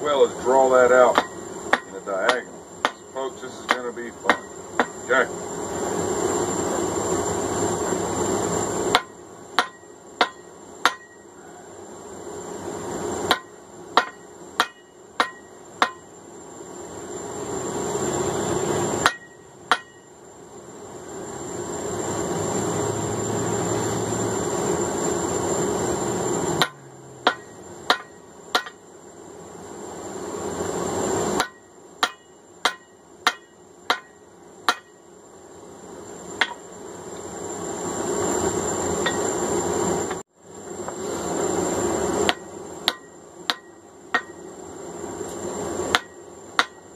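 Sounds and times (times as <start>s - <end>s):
hammer striking steel on anvil: 1.0s - 5.1s, 8.9s - 11.4s, 13.3s - 16.1s, 19.0s - 20.1s, 26.6s - 28.8s, 31.4s - 35.0s, 36.4s - 36.6s, 42.3s - 44.5s, 45.9s - 46.9s.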